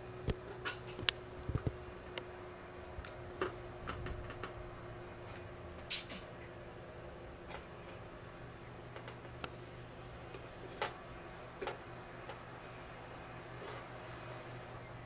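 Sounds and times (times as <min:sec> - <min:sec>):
faint steady hum: 0:00.0 - 0:15.0
hard drive clicks and scrapes: 0:00.1 - 0:02.3, 0:08.9 - 0:14.4.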